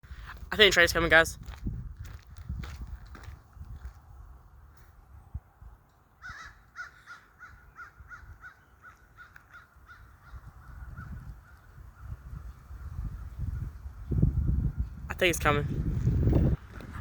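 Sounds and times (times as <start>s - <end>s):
bird calling harsh notes: 6.2s - 11.1s.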